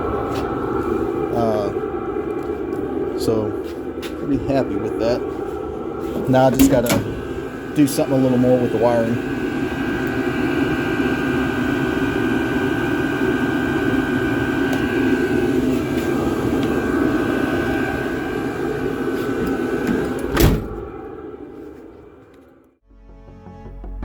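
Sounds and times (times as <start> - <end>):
air heater burner and blower: 0.0 - 22.8.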